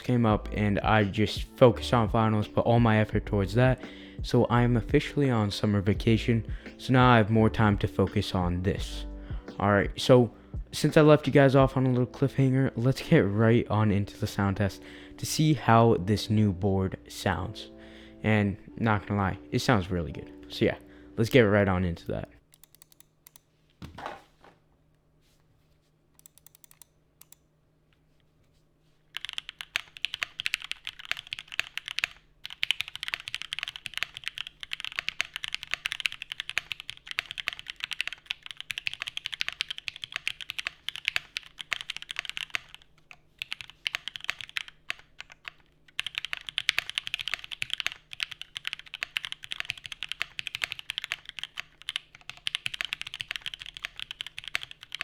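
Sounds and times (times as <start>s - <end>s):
mechanical keyboard typing: 26.2s - 27.4s, 29.2s - 55.0s.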